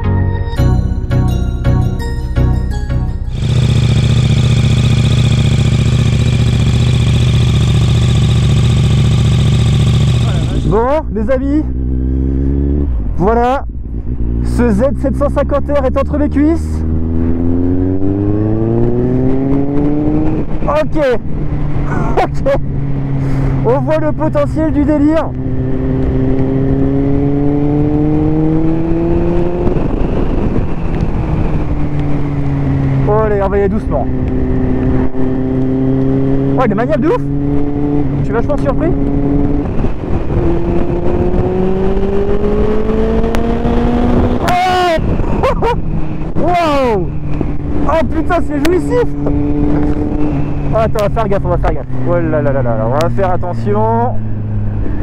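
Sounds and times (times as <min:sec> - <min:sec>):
motorcycle engine idling: 0:03.3 - 0:10.7
motorcycle engine revving: 0:03.3 - 0:11.0, 0:11.6 - 0:55.0.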